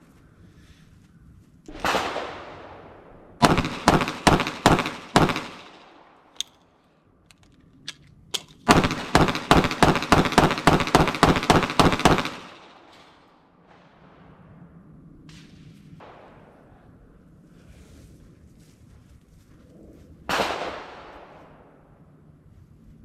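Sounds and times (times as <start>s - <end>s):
pistol shots: 1.7s - 6.6s, 8.3s - 13.4s
small clicks: 6.3s - 8.7s.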